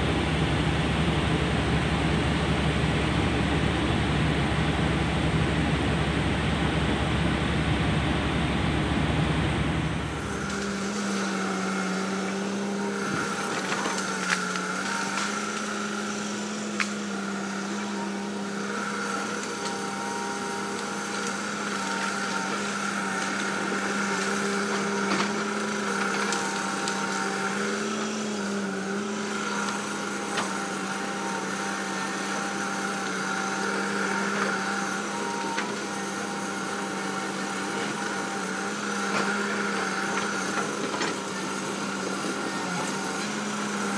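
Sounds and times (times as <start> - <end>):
diesel engine running under load: 0.0 - 43.9.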